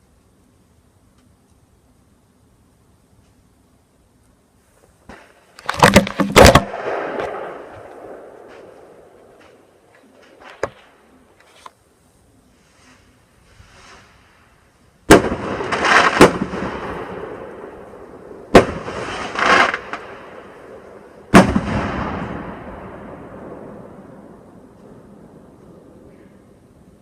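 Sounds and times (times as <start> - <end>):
loud firework bangs with crackling: 5.1 - 9.1, 15.0 - 26.1.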